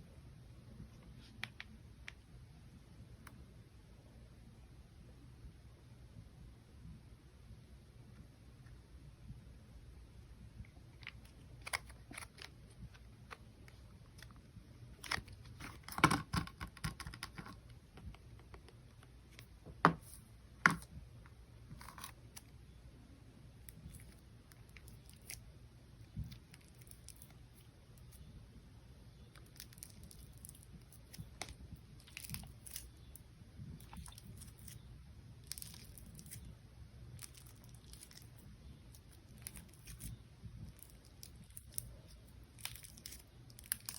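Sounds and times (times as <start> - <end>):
slime sticky crackles: 29.2 - 33.2, 35.4 - 36.5, 37.1 - 43.9.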